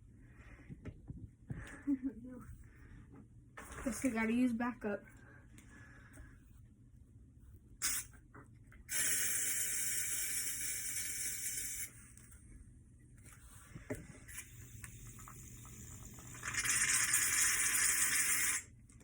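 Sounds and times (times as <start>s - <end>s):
aerosol can spraying: 7.8s - 8.1s.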